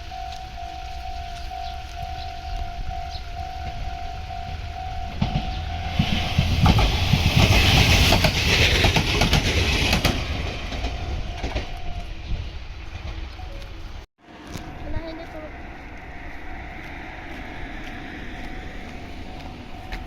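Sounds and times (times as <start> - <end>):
level crossing warning bell: 0.0 - 6.6, 10.7 - 12.2, 14.6 - 20.0
electric train passing: 0.0 - 20.0
rail-joint clatter: 5.1 - 12.1.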